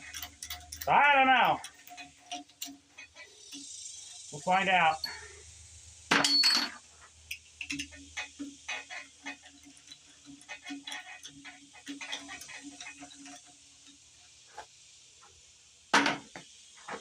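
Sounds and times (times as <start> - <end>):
ratchet wrench clicking: 0.0 - 5.4.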